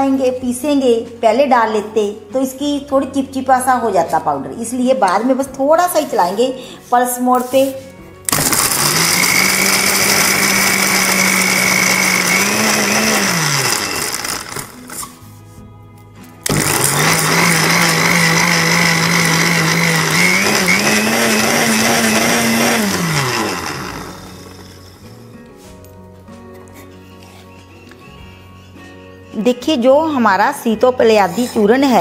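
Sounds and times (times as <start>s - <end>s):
electric mixer grinder running: 8.3s - 15.0s, 16.4s - 25.0s.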